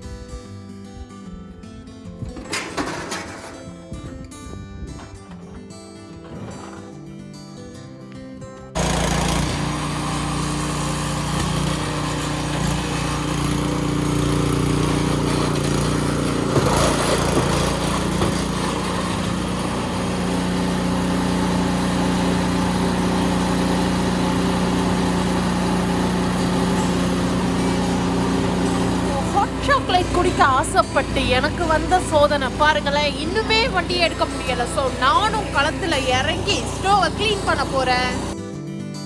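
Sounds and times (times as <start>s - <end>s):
snowblower engine running: 8.8s - 38.4s.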